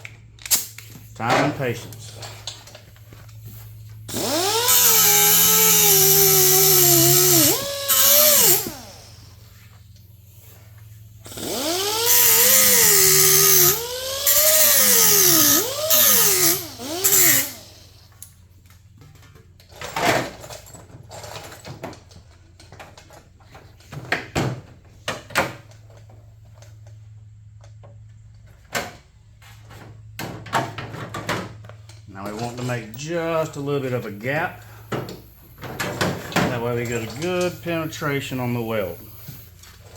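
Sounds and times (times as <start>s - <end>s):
grinder cutting steel: 4.1s - 9.3s, 11.3s - 17.9s, 36.5s - 39.9s.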